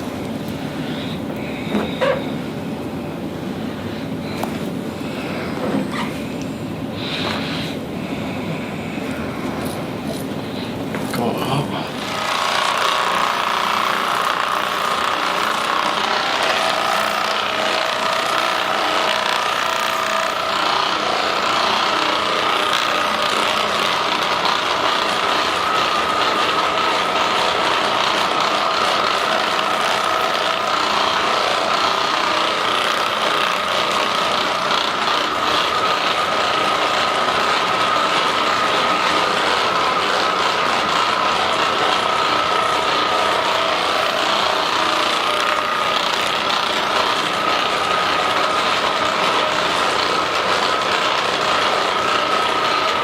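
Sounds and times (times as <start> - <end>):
massage gun motor buzzing: 0.0 - 53.0
rapid mechanical rattle: 11.9 - 53.0.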